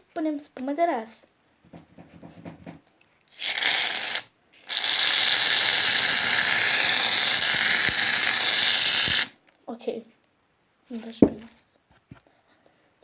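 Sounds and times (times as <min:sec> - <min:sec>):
aerosol can hissing foam: 0:03.4 - 0:09.3.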